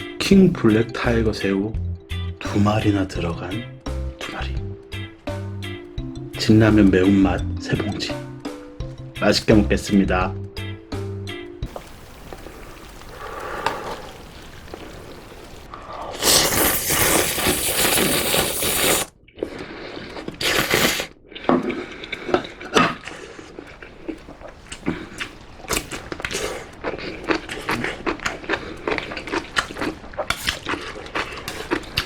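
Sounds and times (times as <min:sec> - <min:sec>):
person chewing: 0:15.6 - 0:32.0
person slurping noodles: 0:15.7 - 0:23.7.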